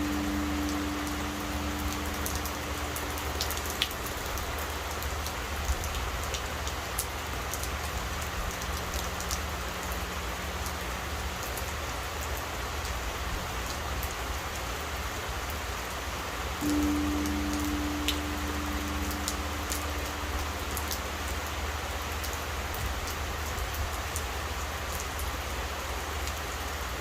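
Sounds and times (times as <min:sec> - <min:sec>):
low hum of temple bell: 0:00.0 - 0:05.2, 0:16.6 - 0:23.0
raindrops tapping nearby: 0:00.0 - 0:15.6, 0:16.6 - 0:26.8
steady rainfall: 0:00.0 - 0:27.0.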